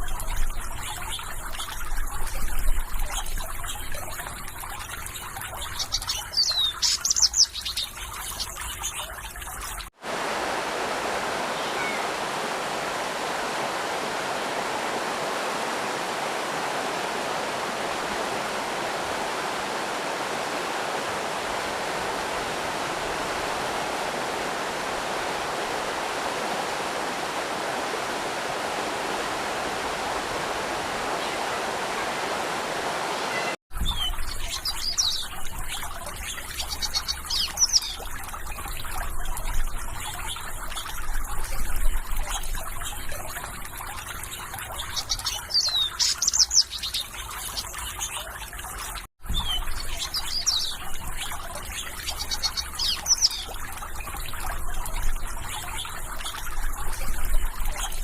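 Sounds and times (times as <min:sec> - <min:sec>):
flowing water rushing: 0:00.0 - 0:58.0
songbirds chirping: 0:11.2 - 0:38.8, 0:49.3 - 0:56.5.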